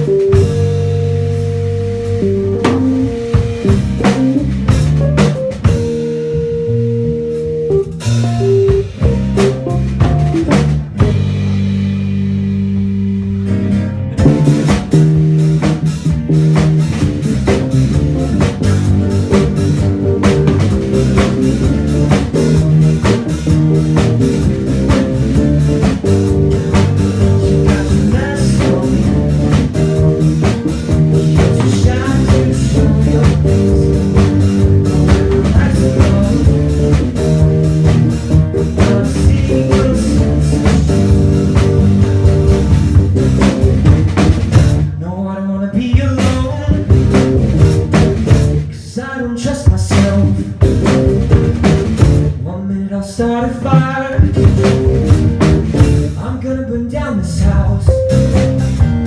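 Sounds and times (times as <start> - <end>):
drum kit beat: 0.0 - 45.2, 45.8 - 48.8, 49.4 - 52.4, 53.5 - 56.4, 57.4 - 59.0
bass guitar: 0.0 - 59.0
electric guitar: 57.9 - 59.0.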